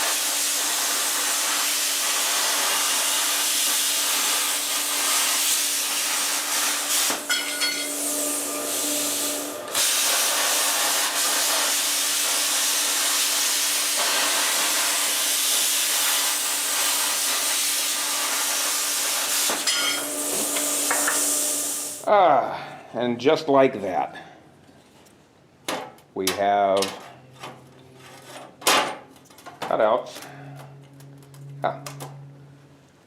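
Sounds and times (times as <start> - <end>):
power cutting tool hissing: 0.0 - 22.0.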